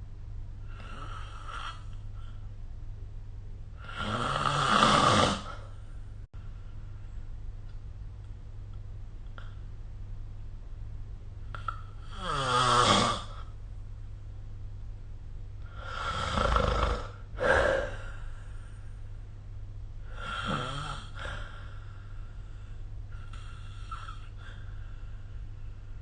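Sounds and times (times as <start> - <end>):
steady low hum: 0.0 - 26.0
person snoring: 0.7 - 2.0, 3.8 - 5.8, 11.6 - 13.5, 15.7 - 18.4, 20.0 - 22.0, 23.2 - 24.7.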